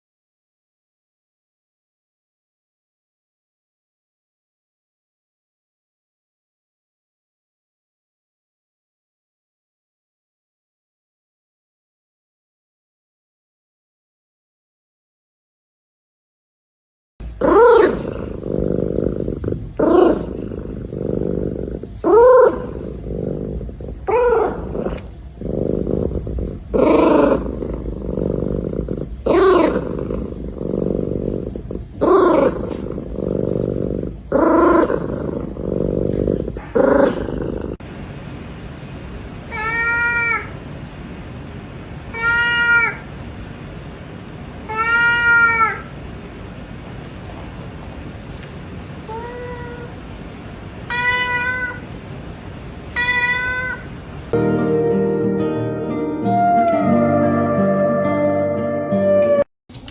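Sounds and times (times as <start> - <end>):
steady low rumble: 17.2 - 39.4
higher-pitched cat meowing: 39.5 - 40.5, 42.1 - 43.0, 44.7 - 45.9, 50.8 - 51.8, 52.9 - 53.9
cat meowing: 39.5 - 40.6, 42.1 - 43.1, 44.7 - 45.9, 49.1 - 50.0, 50.8 - 51.8, 52.9 - 53.9.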